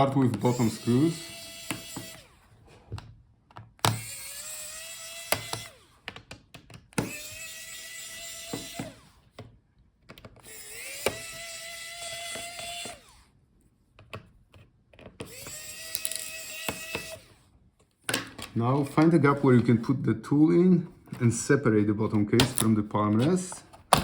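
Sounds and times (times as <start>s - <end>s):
electric screwdriver whining: 0.2s - 2.6s, 3.6s - 9.4s, 10.2s - 13.4s, 15.1s - 17.5s
clicks of bit and screws: 3.0s - 13.0s, 13.9s - 17.3s.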